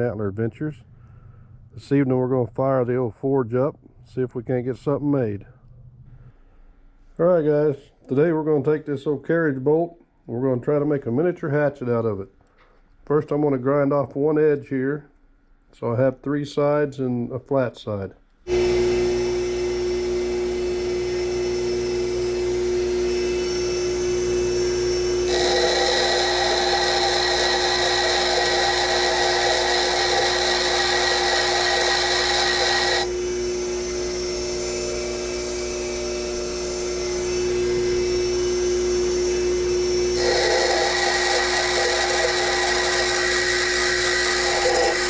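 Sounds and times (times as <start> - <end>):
grinder motor humming: 18.5 - 45.0
metal grinding on wheel: 25.2 - 33.1, 40.1 - 45.0.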